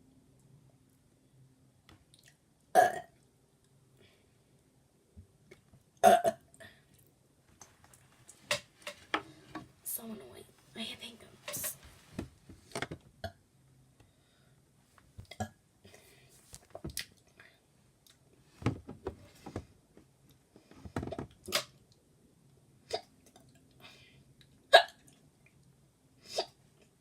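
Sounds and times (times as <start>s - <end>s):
person hiccuping: 2.8s - 3.1s, 6.0s - 6.4s, 24.7s - 25.0s.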